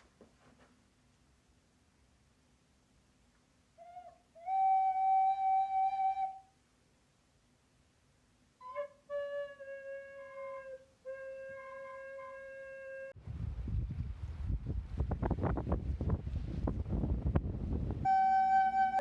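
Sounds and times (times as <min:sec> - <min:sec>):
recorder long held notes: 0:18.0 - 0:19.0.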